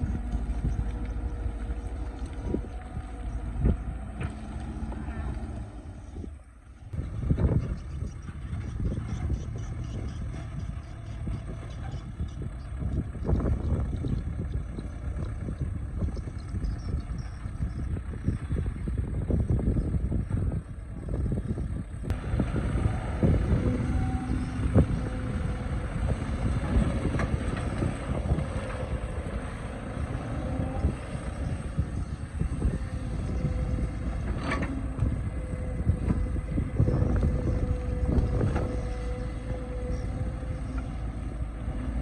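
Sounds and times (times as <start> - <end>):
excavator diesel engine under load: 0.0 - 42.0
hydraulic whine: 22.1 - 42.0.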